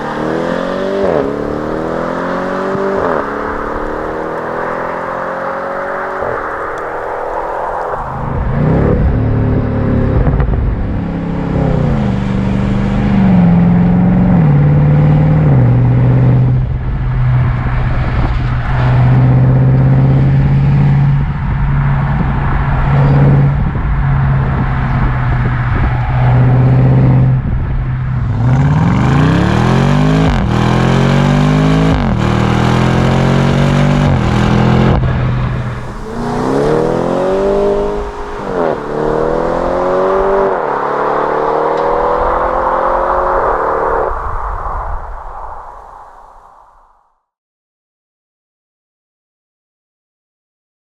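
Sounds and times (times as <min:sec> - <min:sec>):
car engine accelerating: 0:00.0 - 0:46.2.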